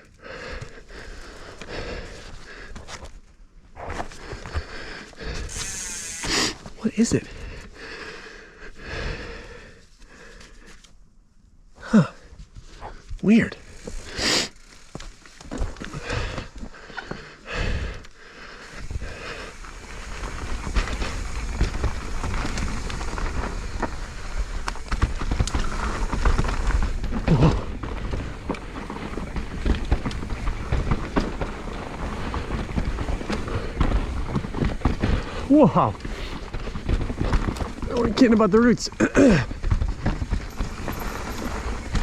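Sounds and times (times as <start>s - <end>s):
clicking from bike: 0.0s - 8.2s, 13.0s - 42.0s
mountain bike rattling over roots: 3.8s - 7.8s, 12.6s - 42.0s.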